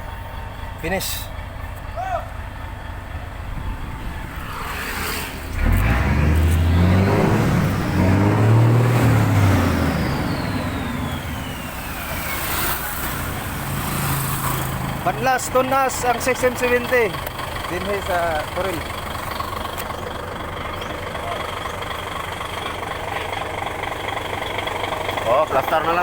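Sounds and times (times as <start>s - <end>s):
diesel truck engine revving: 0.0s - 26.0s
engine cranking: 0.0s - 26.0s.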